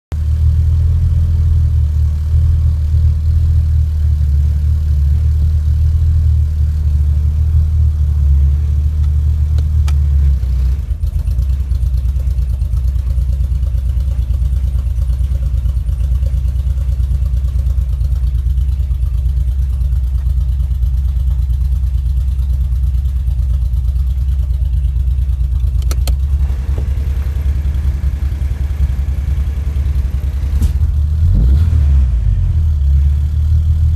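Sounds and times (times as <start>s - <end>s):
engine idling with misfire: 0.1s - 33.9s.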